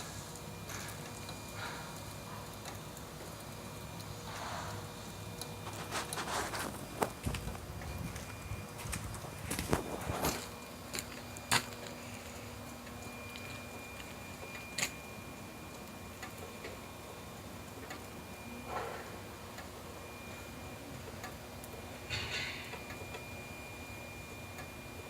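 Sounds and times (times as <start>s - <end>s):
faint steady high tone: 7.8s - 25.0s.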